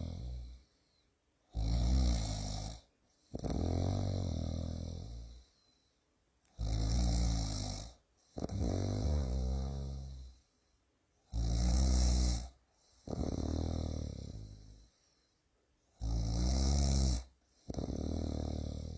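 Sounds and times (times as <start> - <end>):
person snoring: 0.0 - 0.7, 1.5 - 5.4, 6.6 - 10.4, 11.3 - 15.0, 16.0 - 18.9.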